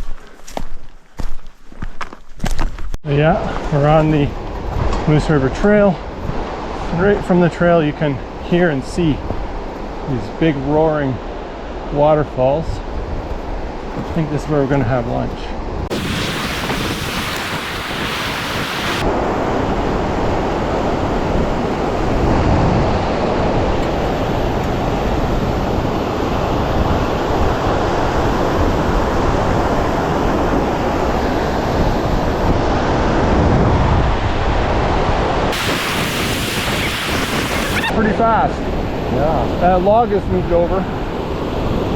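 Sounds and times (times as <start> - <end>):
waterfall roaring: 15.9 - 19.1, 35.5 - 38.1.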